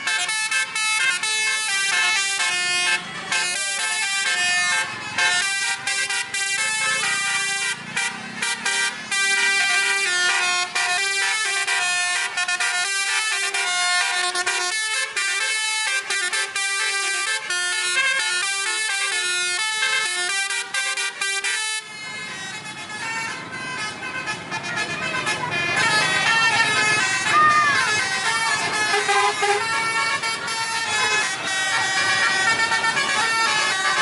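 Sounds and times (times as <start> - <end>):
engine and street noise: 0.0 - 34.0
multi-note musical air horn: 28.4 - 34.0.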